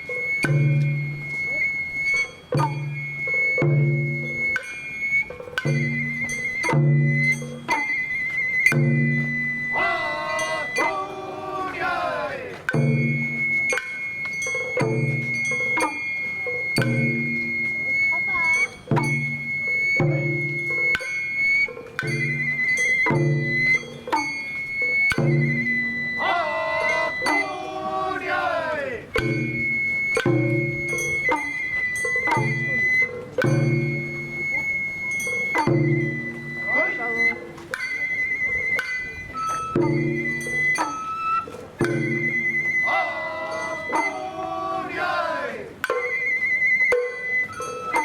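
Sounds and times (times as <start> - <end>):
drum and gong strikes: 0.0 - 1.5, 2.1 - 8.0, 8.7 - 38.0, 38.8 - 46.1
bamboo flute high wavering note: 0.0 - 48.0
drums striking: 25.1 - 31.6, 39.6 - 41.0, 41.6 - 46.1.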